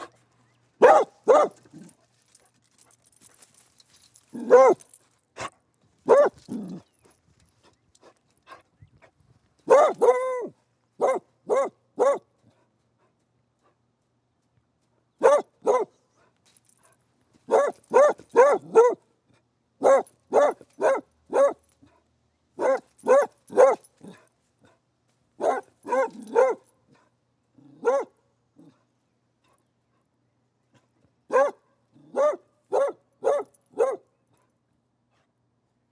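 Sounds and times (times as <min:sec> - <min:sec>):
dog barking: 0:00.8 - 0:01.8, 0:04.4 - 0:05.5, 0:06.1 - 0:06.7, 0:09.7 - 0:12.3, 0:15.2 - 0:15.9, 0:17.5 - 0:19.0, 0:19.8 - 0:21.7, 0:22.6 - 0:24.2, 0:25.4 - 0:26.7, 0:27.7 - 0:28.7, 0:31.3 - 0:34.1.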